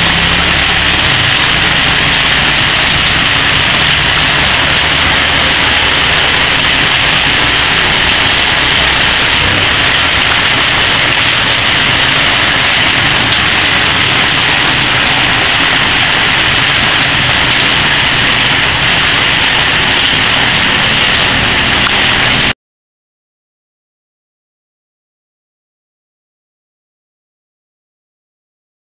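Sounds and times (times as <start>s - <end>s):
heavy rain pouring: 0.0s - 22.6s.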